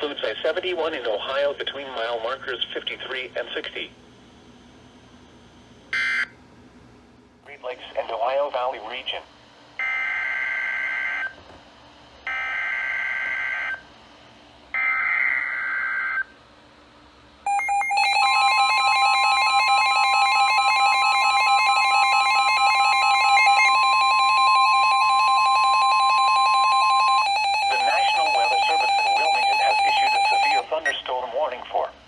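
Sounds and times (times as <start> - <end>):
two-tone attention alarm: 5.9 - 6.3, 9.8 - 11.4, 12.3 - 13.8, 17.5 - 31.0.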